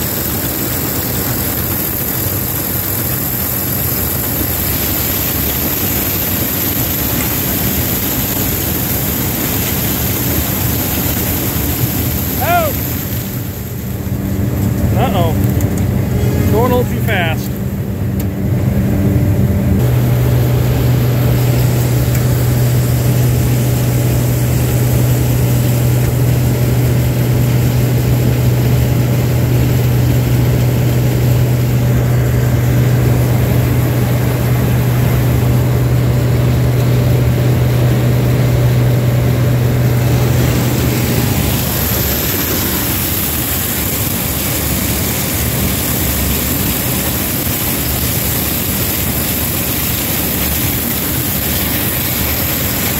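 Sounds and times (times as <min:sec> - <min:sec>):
combine harvester humming: 0:00.0 - 0:52.9
higher hiss: 0:08.5 - 0:14.0.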